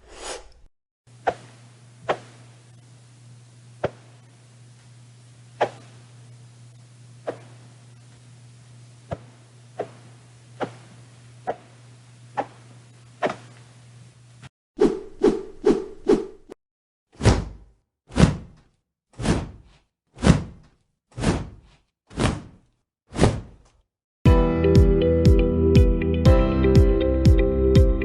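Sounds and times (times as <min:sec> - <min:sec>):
steady low hum: 0:01.1 - 0:14.5.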